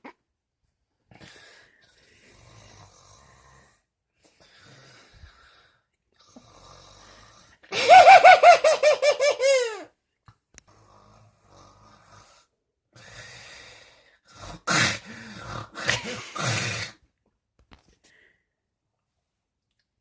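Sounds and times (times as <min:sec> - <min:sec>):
snoring with soft breaths: 0:01.1 - 0:07.7, 0:10.6 - 0:17.0
high-pitched wheezing snore: 0:01.2 - 0:07.8, 0:10.7 - 0:17.0.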